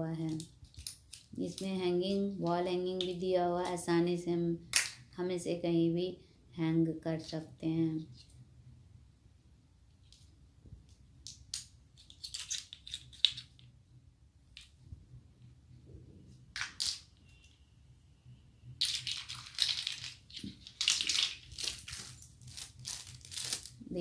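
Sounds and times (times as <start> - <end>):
plastic rustling: 18.8 - 23.9.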